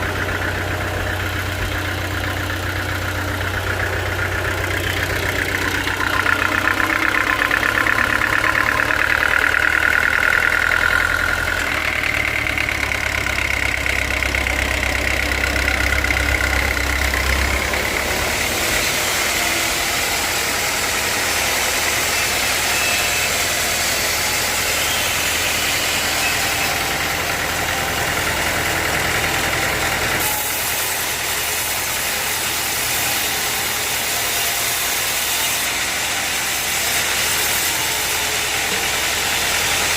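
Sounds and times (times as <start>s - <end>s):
high whine: 0.0s - 18.9s
sawmill machinery droning: 0.0s - 39.9s.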